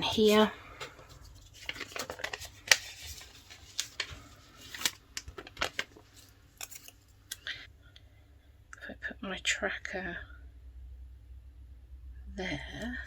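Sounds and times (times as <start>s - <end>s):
paper rustling and tapping: 0.2s - 7.0s.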